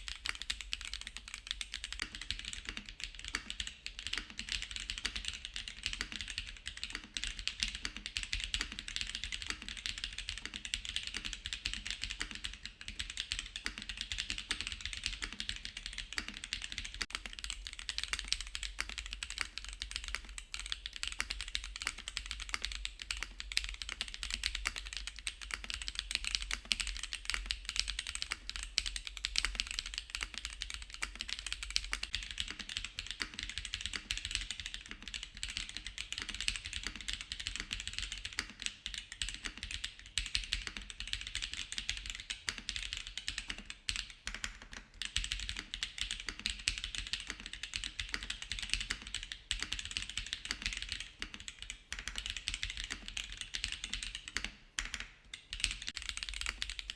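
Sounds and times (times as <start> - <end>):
mechanical keyboard typing: 0.0 - 7.0, 7.7 - 34.5, 47.3 - 56.9.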